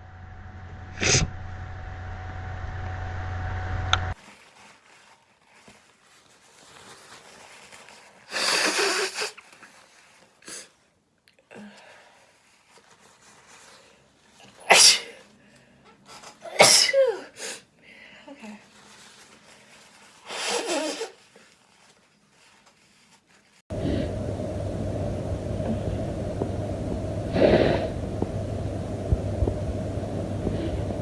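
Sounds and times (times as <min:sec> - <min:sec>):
steady hum: 0:00.0 - 0:04.2, 0:23.7 - 0:31.0
person sneezing: 0:08.3 - 0:09.4, 0:14.6 - 0:15.2, 0:16.4 - 0:17.7, 0:20.3 - 0:21.2.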